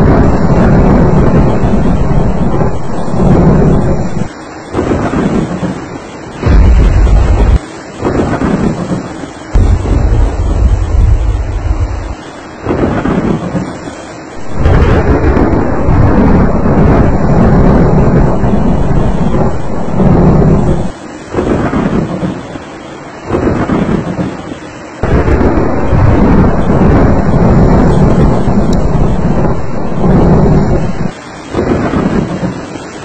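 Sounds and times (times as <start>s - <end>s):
deep thunder rumble: 0.0s - 22.6s, 23.2s - 32.8s
heavy rain: 0.0s - 33.0s.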